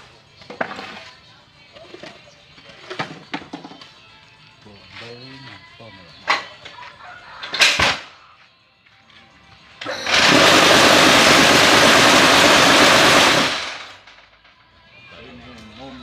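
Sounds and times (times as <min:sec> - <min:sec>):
press machine running: 0:09.8 - 0:14.0.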